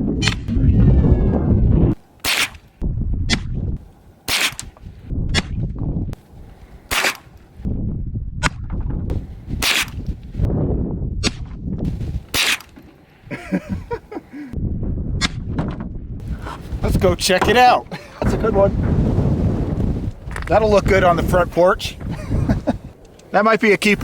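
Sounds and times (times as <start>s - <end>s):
low wind-like rumble: 0.0s - 12.4s, 13.2s - 24.0s.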